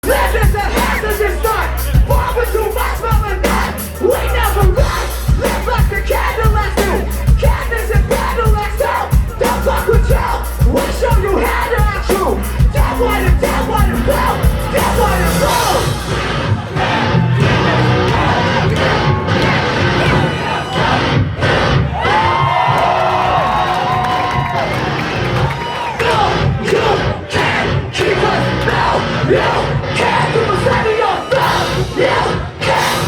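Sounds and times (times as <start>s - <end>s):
bending vocal lines: 0.0s - 23.0s, 25.7s - 33.0s
deep bass: 0.0s - 30.8s
rap-rock band playing: 0.0s - 33.0s
heavy drum hits: 4.6s - 20.2s.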